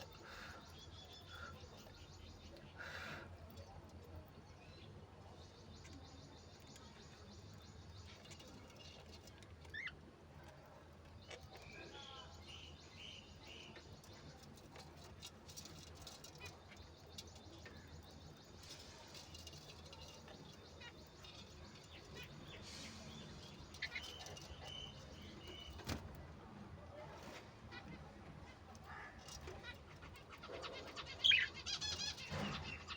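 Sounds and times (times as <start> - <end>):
budgerigars chirping: 28.9 - 32.9.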